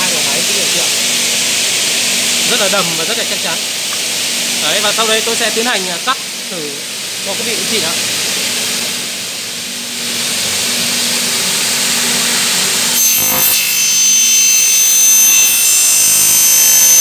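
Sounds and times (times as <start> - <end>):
saw motors running: 10.0 - 17.0
saw blade cutting aluminium whine: 10.5 - 17.0.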